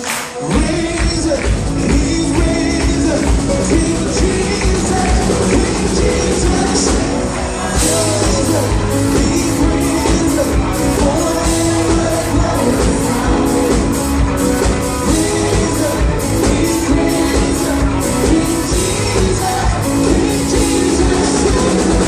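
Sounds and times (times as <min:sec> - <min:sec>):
steady drum beat: 0:00.0 - 0:22.0
worship singing over a band: 0:00.2 - 0:22.0.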